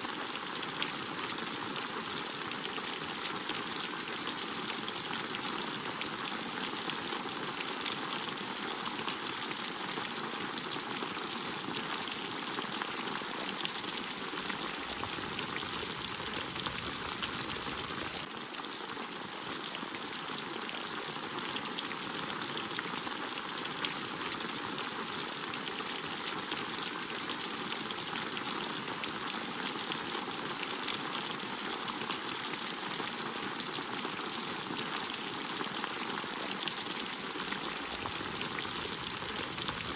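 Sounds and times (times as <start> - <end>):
steady rainfall: 0.1 - 39.9
water dripping: 14.4 - 18.3, 37.4 - 39.9.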